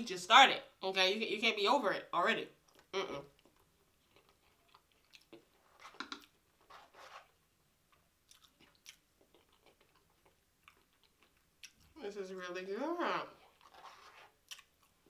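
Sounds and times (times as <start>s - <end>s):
person chewing food: 2.6s - 6.4s, 7.9s - 12.0s, 13.4s - 15.0s.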